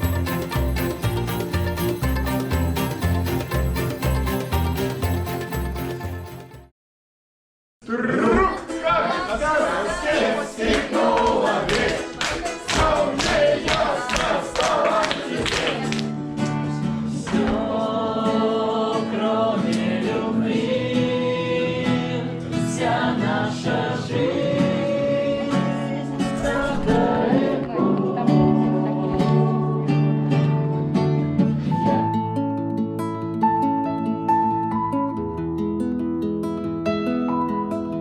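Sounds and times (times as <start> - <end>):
instrumental accompaniment: 0.0 - 6.7
group singing: 8.3 - 16.1, 16.8 - 30.7.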